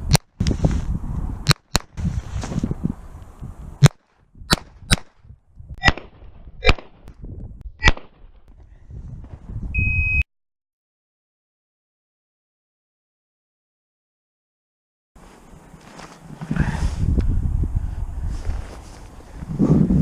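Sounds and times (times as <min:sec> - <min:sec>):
wind rumble on microphone: 0:00.0 - 0:10.2, 0:15.4 - 0:20.0
short high beep: 0:09.8 - 0:10.2.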